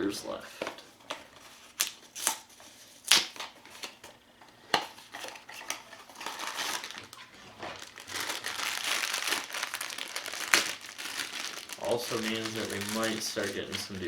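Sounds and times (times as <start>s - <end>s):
wrapping crinkling: 4.9s - 14.0s.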